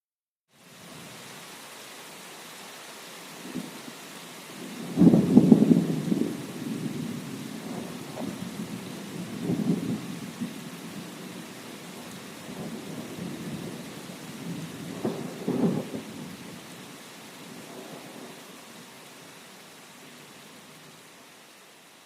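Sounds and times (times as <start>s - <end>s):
steady rain hissing: 0.5s - 22.0s
thunder rumbling: 4.8s - 13.8s, 14.4s - 16.4s.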